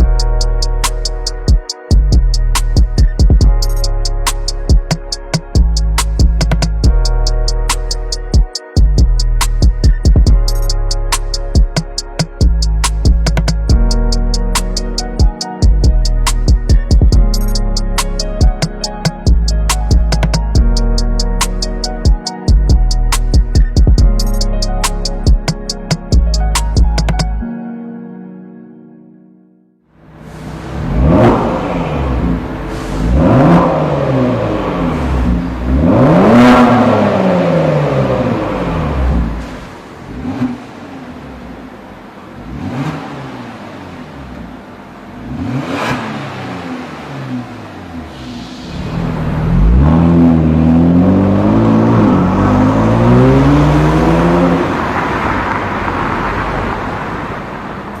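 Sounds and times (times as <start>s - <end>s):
car engine revving: 30.2s - 58.0s.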